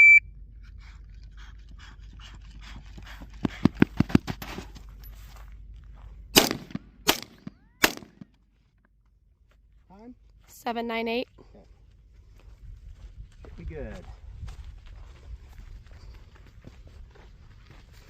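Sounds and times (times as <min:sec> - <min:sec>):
rifle shots: 0:06.4 - 0:08.3.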